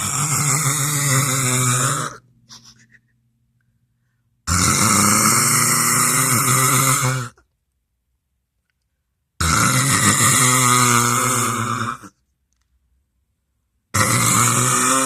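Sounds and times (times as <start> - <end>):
woman snoring loudly: 0.0 - 2.2, 4.5 - 7.4, 9.4 - 12.1, 14.0 - 15.0.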